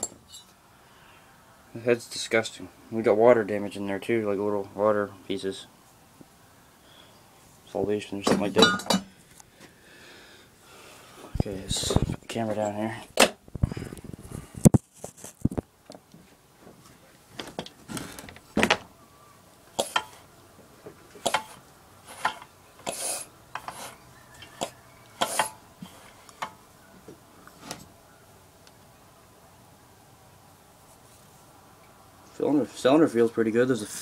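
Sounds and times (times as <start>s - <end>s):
hands scraping on engine: 22.1s - 24.0s.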